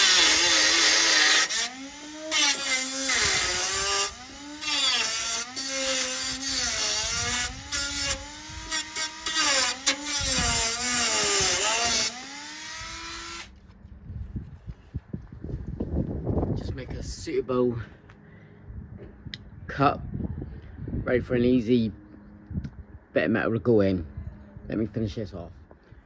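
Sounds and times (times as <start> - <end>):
rotary tool cutting steel: 0.0 - 13.5.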